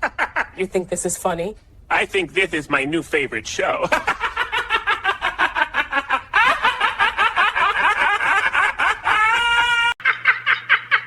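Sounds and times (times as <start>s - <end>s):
person laughing heartily: 3.9s - 11.0s.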